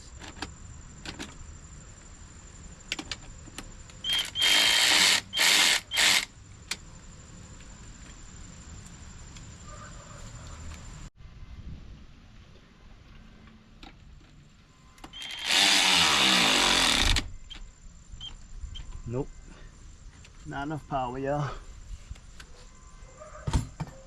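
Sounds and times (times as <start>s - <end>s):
power drill driving bolts: 4.0s - 6.3s, 15.0s - 17.6s.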